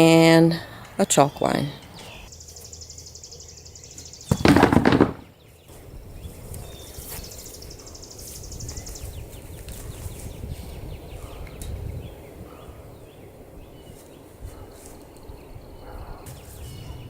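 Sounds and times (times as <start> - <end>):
wind on microphone: 5.7 - 17.0.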